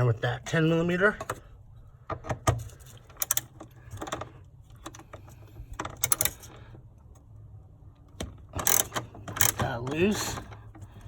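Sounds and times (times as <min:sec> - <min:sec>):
ratchet clicking rapidly: 0:08.6 - 0:09.6.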